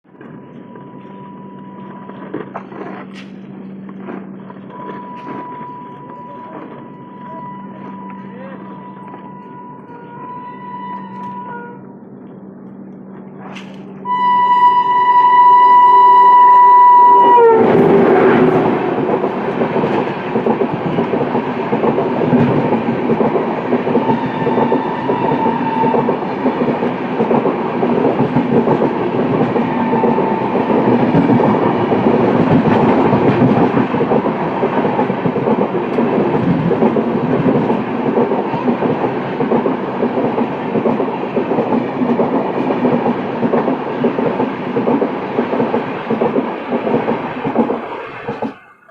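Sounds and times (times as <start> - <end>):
train rattling over rails: 0.0 - 48.9
shrill locomotive horn: 4.7 - 11.9, 14.0 - 19.1, 23.9 - 26.1, 29.4 - 32.4.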